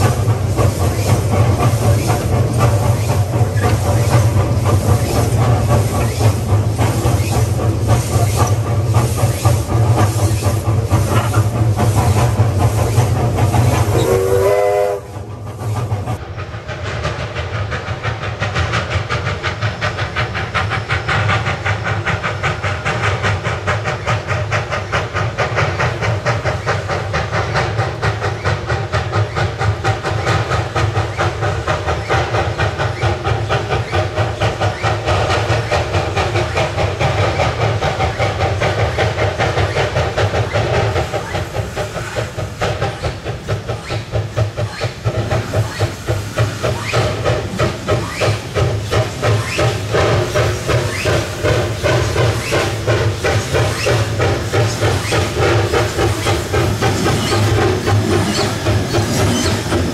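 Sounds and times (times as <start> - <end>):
steam hissing: 0.0 - 59.9
steam locomotive exhaust beats: 0.0 - 59.9
steam whistle: 14.0 - 15.1.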